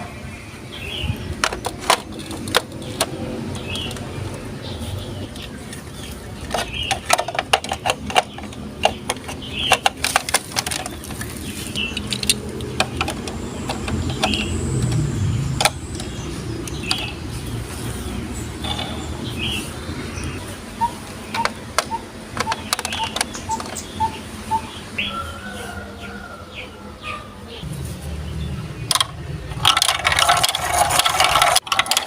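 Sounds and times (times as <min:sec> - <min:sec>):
marbles clicking and clacking: 0:28.9 - 0:32.0
marbles rolling on plastic track: 0:28.9 - 0:32.0.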